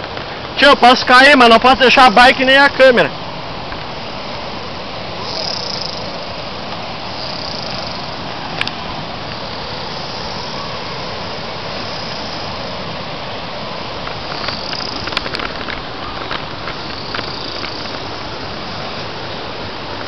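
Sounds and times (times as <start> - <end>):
bicycle tyre noise on dirt: 5.2 - 20.0.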